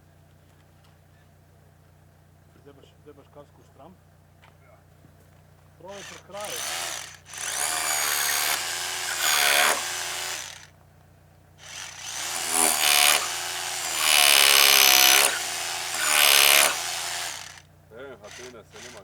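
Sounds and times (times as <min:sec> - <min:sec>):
power tool cutting wood: 0:06.0 - 0:10.7, 0:11.6 - 0:17.6, 0:18.3 - 0:19.0.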